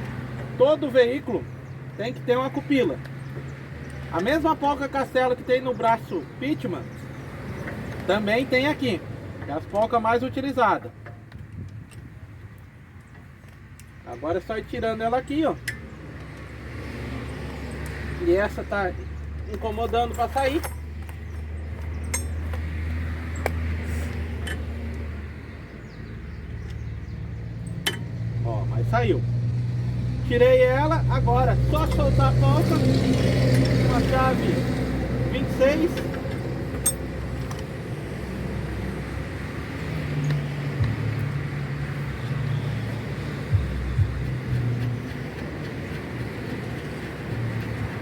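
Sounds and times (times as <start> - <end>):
vehicle engine running: 25.8 - 48.0.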